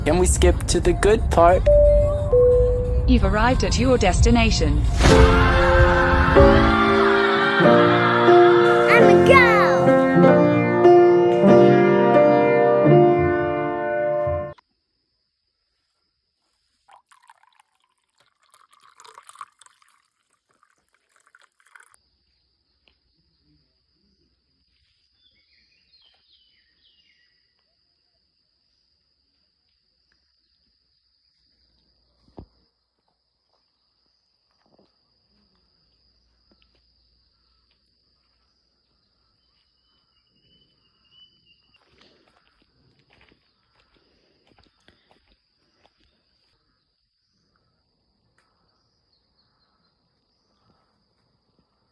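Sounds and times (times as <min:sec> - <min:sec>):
water trickling and splashing: 0:16.8 - 0:22.0.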